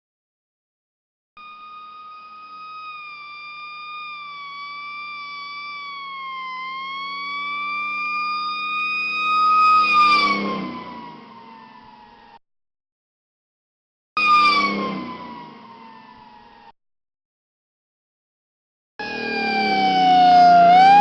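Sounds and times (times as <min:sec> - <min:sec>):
fire truck engine hum: 0:01.4 - 0:10.0, 0:19.0 - 0:21.0
fire truck siren wailing: 0:01.4 - 0:12.4, 0:14.2 - 0:16.7, 0:19.0 - 0:21.0.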